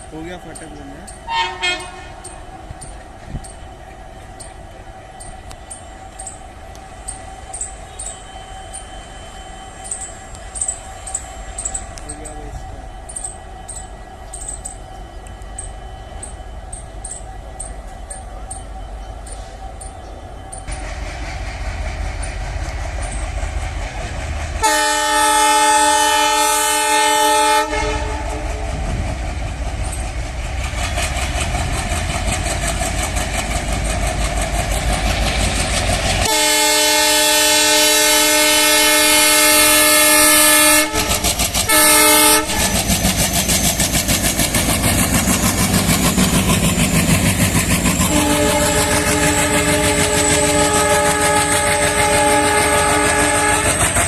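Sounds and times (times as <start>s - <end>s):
diesel locomotive engine rumble: 0.0s - 54.0s
wheels clickety-clack on rails: 0.0s - 54.0s
multi-note train horn blasts: 1.2s - 2.5s, 24.6s - 29.0s, 36.2s - 43.0s, 47.9s - 54.0s.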